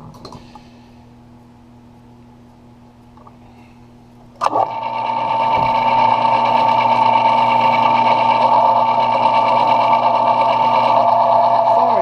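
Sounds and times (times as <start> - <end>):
lathe motor humming: 4.4 - 12.0.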